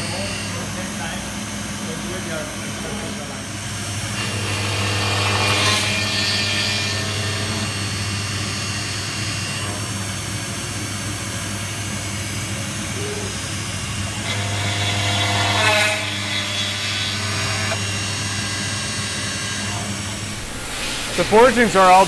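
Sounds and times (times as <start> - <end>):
factory machinery hum: 0.0 - 22.0
hissing whirring swells: 20.0 - 22.0.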